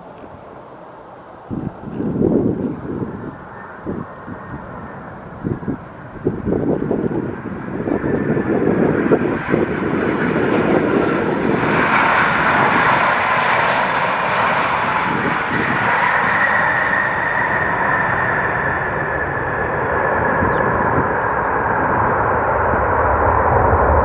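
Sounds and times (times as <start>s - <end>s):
jet engines rumbling: 0.0s - 24.0s
wind buffeting microphone: 0.0s - 24.0s
high engine whine: 14.1s - 24.0s.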